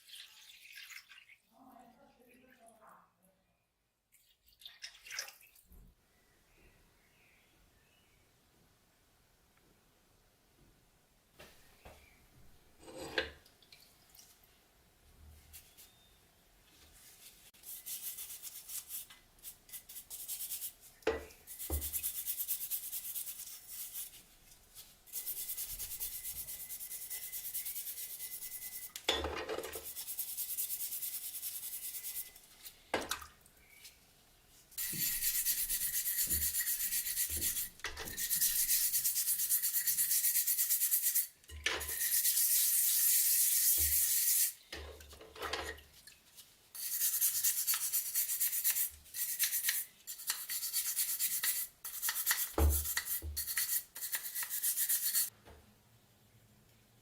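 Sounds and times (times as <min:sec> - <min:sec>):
hissing scraping of rust: 0:34.8 - 0:40.2.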